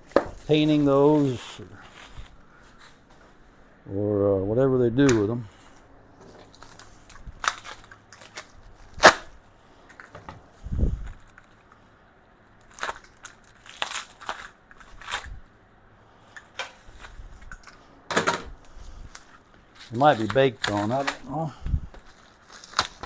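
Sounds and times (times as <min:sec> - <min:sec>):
packing material crinkling and tearing: 0:06.4 - 0:09.4, 0:12.6 - 0:15.5, 0:18.6 - 0:23.0.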